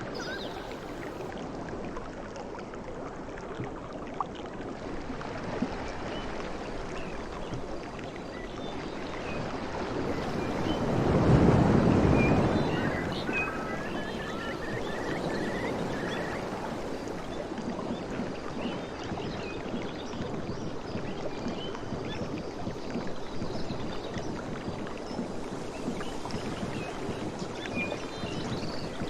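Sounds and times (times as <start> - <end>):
sea waves washing: 9.5 - 17.6.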